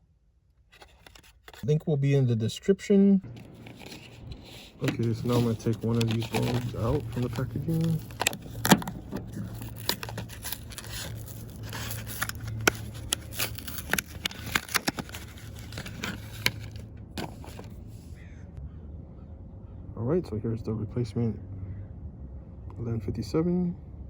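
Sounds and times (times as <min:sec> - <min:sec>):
packaging clicking and crackling: 0:00.7 - 0:01.7, 0:03.3 - 0:17.8.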